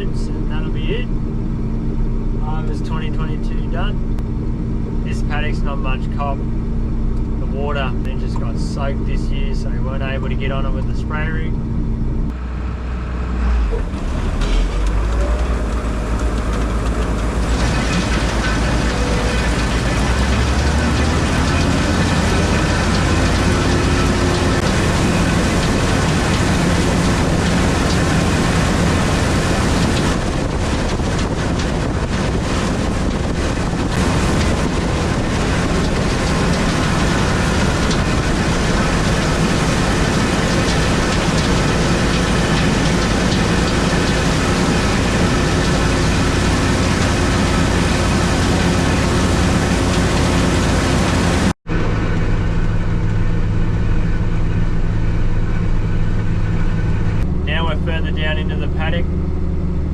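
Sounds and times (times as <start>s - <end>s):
combine harvester engine drone: 0.0s - 59.9s
threshing machinery rushing: 13.4s - 59.8s.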